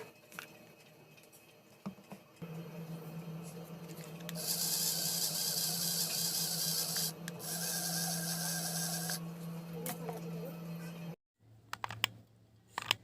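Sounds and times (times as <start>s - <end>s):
small motor humming: 3.3s - 11.1s.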